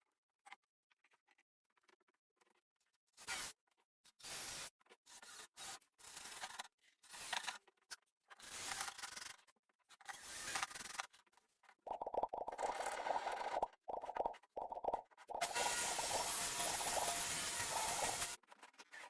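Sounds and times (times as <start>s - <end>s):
scraping and rubbing strokes: 11.9s - 18.4s.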